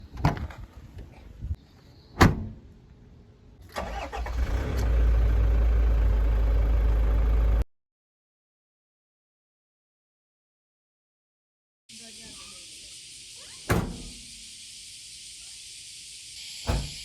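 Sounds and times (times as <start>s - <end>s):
engine cranking: 3.7s - 5.0s
engine idling with low rumble: 4.2s - 7.6s.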